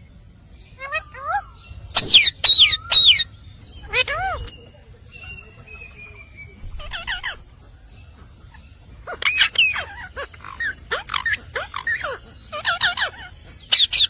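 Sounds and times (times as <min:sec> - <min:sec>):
parrot calling: 0:00.8 - 0:04.6, 0:06.7 - 0:07.5, 0:08.5 - 0:14.0.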